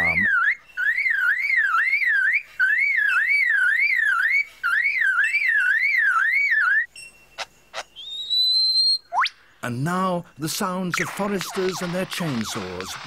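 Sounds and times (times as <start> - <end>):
bird mimicking a car alarm: 0.0 - 6.9.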